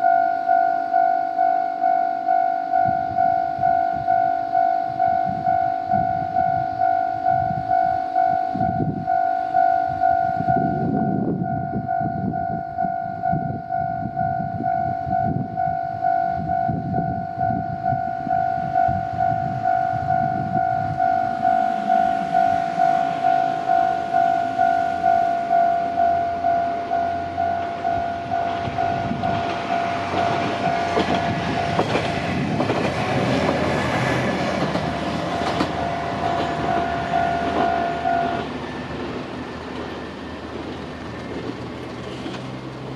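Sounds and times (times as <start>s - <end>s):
diesel railcar engine: 0.0s - 42.9s
railroad crossing bell ringing: 0.0s - 42.9s
train wheels on rails: 14.6s - 42.9s.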